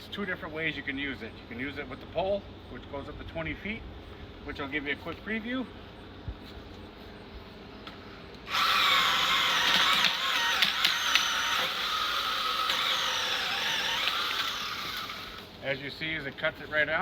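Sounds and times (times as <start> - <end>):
pole chainsaw cutting branch: 8.4 - 15.6.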